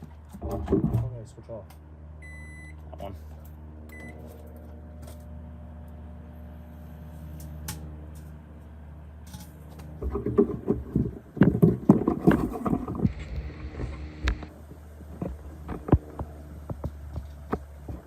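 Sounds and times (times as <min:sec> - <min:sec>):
microwave oven humming: 0:01.8 - 0:11.4
crackling and popping: 0:09.3 - 0:18.0.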